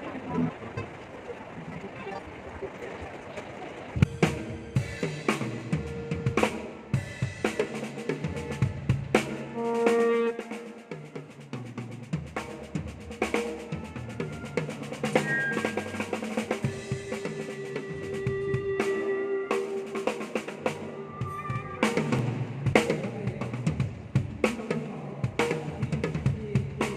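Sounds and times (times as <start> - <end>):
drum kit playing: 4.0 - 26.9
held pitched instrument notes: 15.0 - 22.4.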